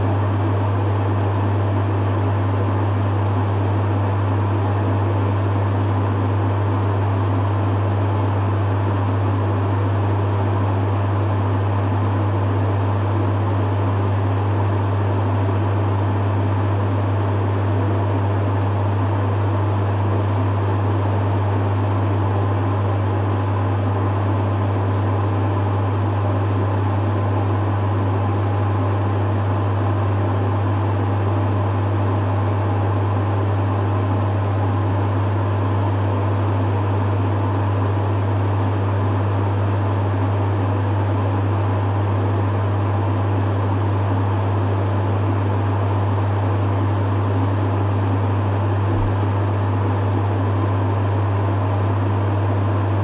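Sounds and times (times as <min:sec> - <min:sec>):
dehumidifier humming: 0:00.0 - 0:53.0
fan whooshing: 0:48.3 - 0:50.0.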